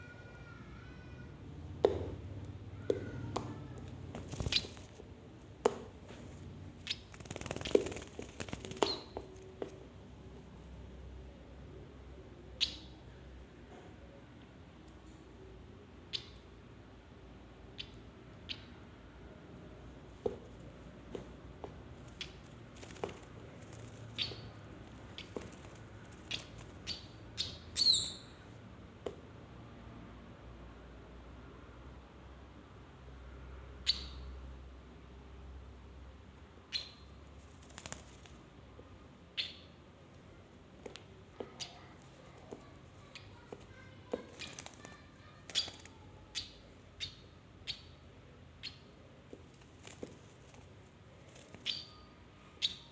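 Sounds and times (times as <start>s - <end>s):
bird peeping: 4.3s - 4.9s, 6.8s - 9.4s, 12.6s - 13.0s, 16.1s - 16.4s, 17.8s - 18.8s, 23.7s - 28.4s, 33.8s - 34.3s, 36.7s - 37.2s, 39.3s - 39.8s, 41.4s - 48.0s, 48.6s - 48.9s, 51.4s - 52.9s.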